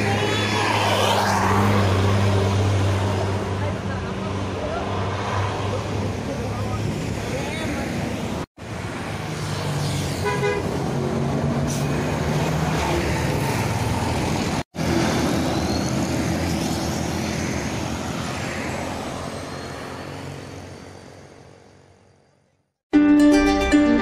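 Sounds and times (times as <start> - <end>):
buses passing: 0.0 - 24.0
bus horns tooting: 10.2 - 10.8.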